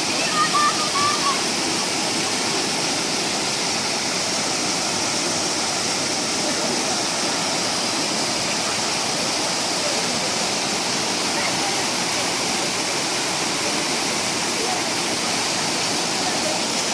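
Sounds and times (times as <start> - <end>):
stream water rushing: 0.0 - 16.9.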